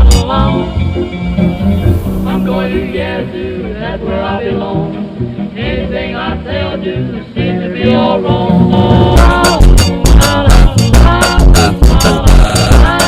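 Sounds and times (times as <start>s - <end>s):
person singing over bass beat: 0.0s - 0.6s, 8.8s - 13.0s.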